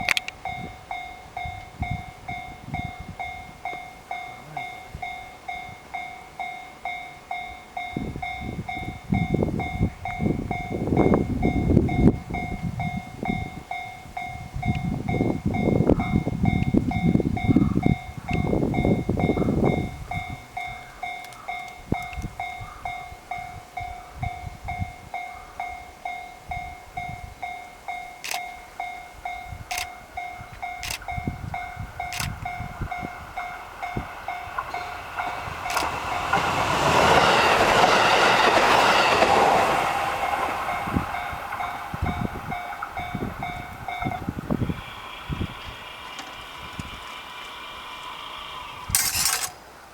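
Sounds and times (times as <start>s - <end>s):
level-crossing warning bell: 0.0s - 49.6s
diesel railcar rumbling past: 0.0s - 49.9s
clattering train wheels: 28.2s - 49.6s.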